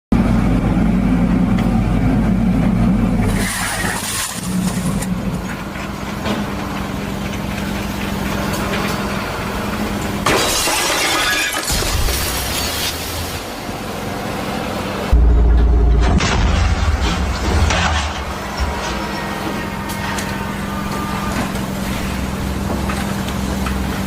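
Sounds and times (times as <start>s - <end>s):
engine humming: 0.1s - 24.0s
loud crash: 10.2s - 13.4s, 15.1s - 19.7s.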